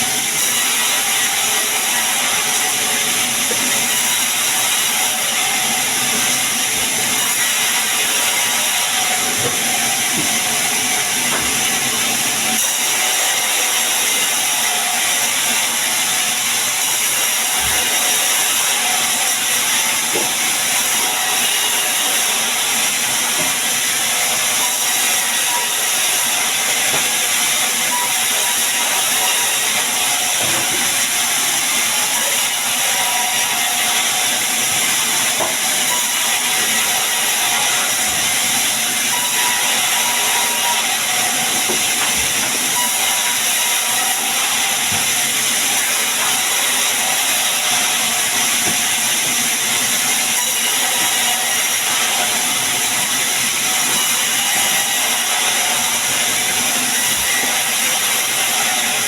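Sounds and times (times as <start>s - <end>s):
sawmill saw cutting logs: 0.0s - 59.0s.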